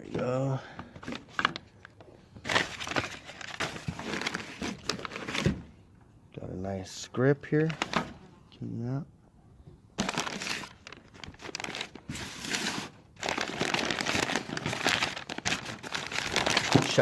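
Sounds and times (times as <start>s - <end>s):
packing wrap crinkling: 2.4s - 5.4s, 10.0s - 17.0s.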